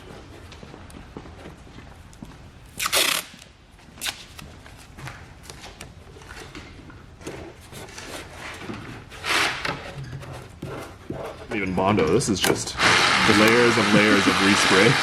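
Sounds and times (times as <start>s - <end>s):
tape ripping off roll: 2.8s - 4.4s.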